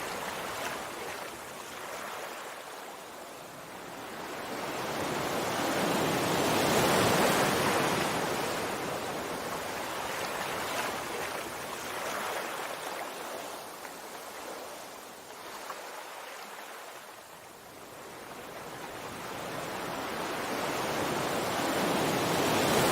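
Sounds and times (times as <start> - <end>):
sea waves washing in: 18.8 - 22.9.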